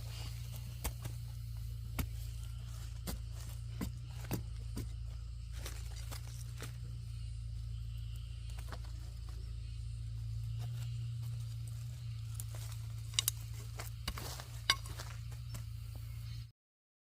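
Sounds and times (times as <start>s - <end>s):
rustling: 0.0s - 7.4s
steady low hum: 0.0s - 16.5s.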